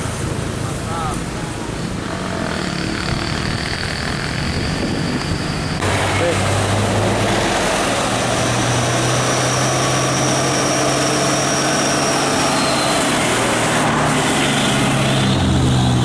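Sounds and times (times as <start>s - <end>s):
diesel truck engine running: 0.0s - 16.0s
road noise: 0.0s - 16.0s.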